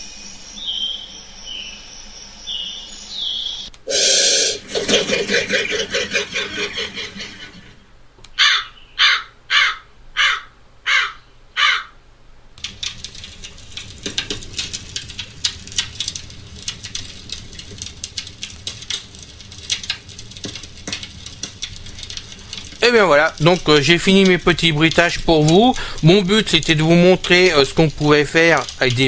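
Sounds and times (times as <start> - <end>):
crow cawing: 8.4 - 12.0
burning wood crackling: 12.5 - 29.0.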